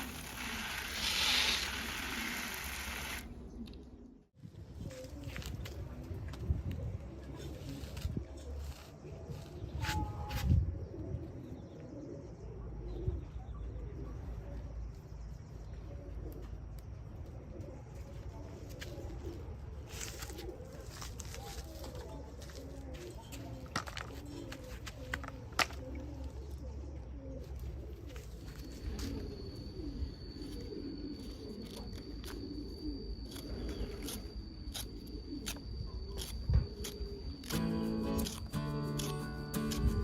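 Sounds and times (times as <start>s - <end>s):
bird cooing: 17.2s - 40.0s.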